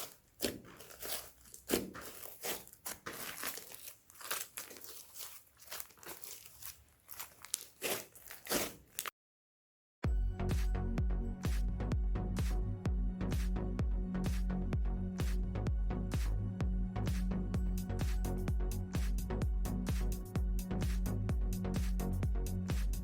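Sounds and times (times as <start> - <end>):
slime squished by hand: 0.0 - 9.1.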